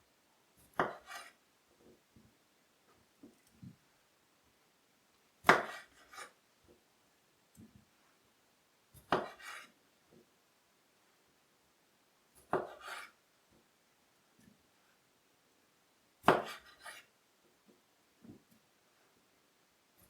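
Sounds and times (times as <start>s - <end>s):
knife cutting on cutting board: 0.7s - 1.4s, 5.4s - 6.4s, 9.0s - 9.7s, 12.5s - 13.2s, 16.2s - 17.1s.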